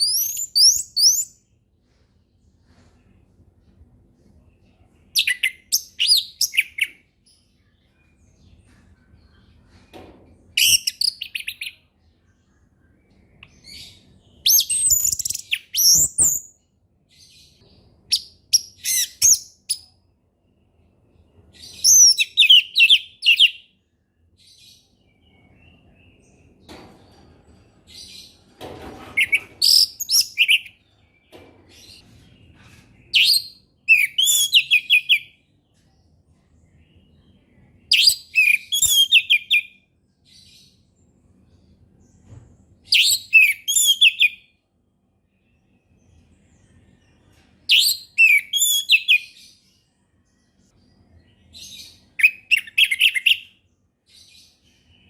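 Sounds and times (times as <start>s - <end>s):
bird singing whistles and trills: 0.0s - 1.4s, 5.2s - 7.0s, 13.2s - 16.6s, 33.1s - 35.3s, 37.9s - 39.8s, 42.9s - 44.5s, 47.7s - 49.6s, 51.5s - 53.6s.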